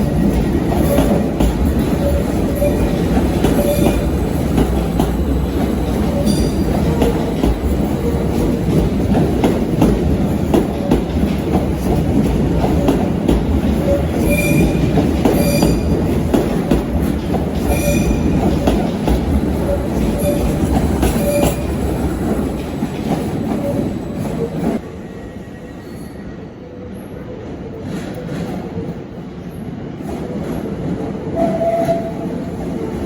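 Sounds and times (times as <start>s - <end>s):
train wheels rumbling on track: 0.0s - 33.0s
wheels squealing: 17.6s - 24.8s.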